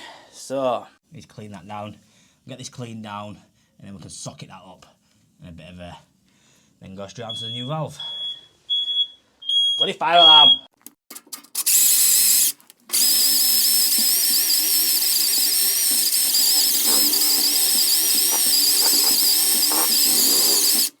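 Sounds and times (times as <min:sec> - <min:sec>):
plumbing tool hissing: 0:11.6 - 0:21.0.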